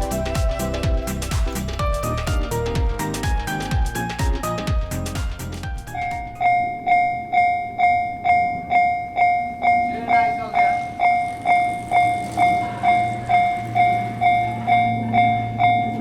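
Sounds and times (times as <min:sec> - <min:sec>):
low rumble: 0:00.0 - 0:09.1
level-crossing bell clanging: 0:06.4 - 0:16.0.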